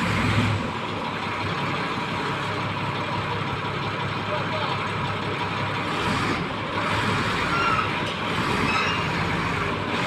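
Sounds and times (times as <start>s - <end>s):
bulldozer engine running: 0.0s - 10.0s
crawler tracks clanking: 4.8s - 10.0s
tracks squealing: 7.3s - 9.4s.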